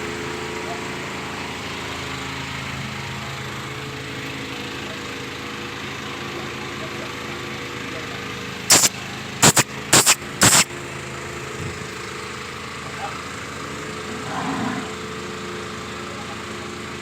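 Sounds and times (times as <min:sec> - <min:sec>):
loud hissing bursts: 0:08.7 - 0:10.7
machine motor running: 0:08.7 - 0:10.7.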